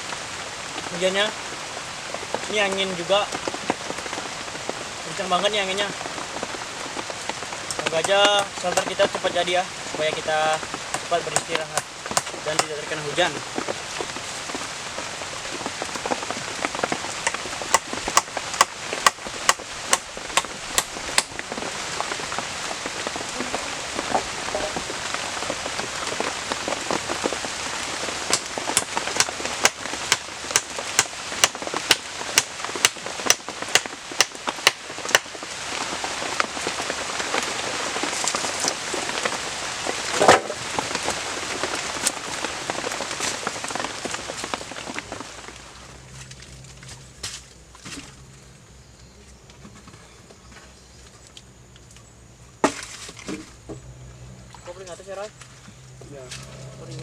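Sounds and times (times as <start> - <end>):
heavy rain falling: 0.0 - 48.8, 52.6 - 57.0.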